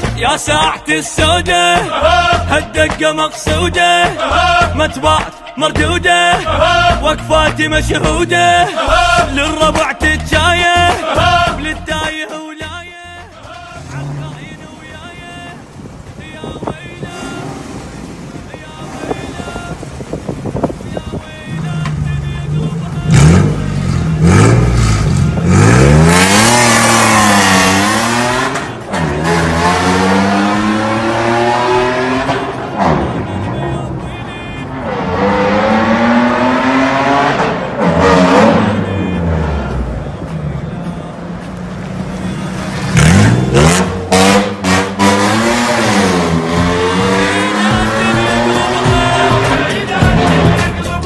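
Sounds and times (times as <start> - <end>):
engine revving: 13.3 - 20.2, 21.6 - 51.0.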